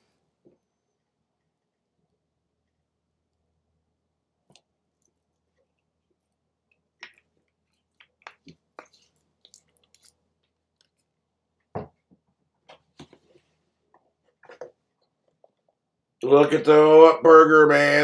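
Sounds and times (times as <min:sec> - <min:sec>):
hands handling food packaging: 0:06.8 - 0:11.2.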